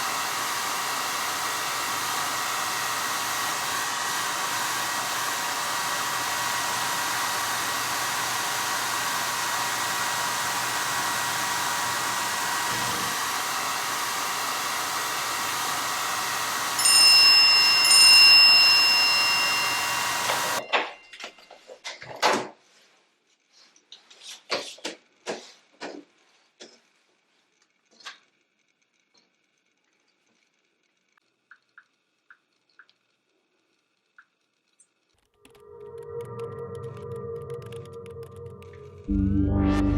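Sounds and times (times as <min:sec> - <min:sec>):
hair dryer running: 0:00.0 - 0:20.7.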